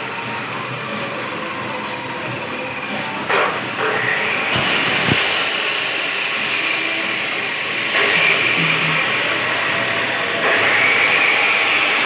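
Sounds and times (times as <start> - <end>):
workshop machinery whining: 0.0 - 12.0.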